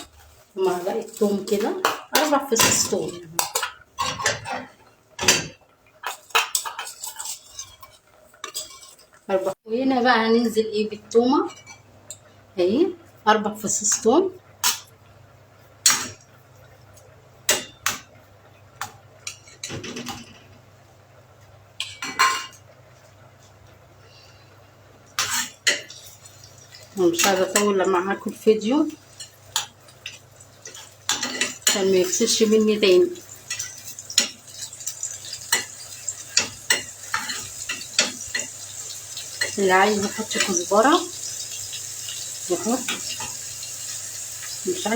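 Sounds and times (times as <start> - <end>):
metal utensil scraping a pan: 0.0 - 9.5, 25.2 - 44.0
garlic sizzling in oil: 25.1 - 44.9.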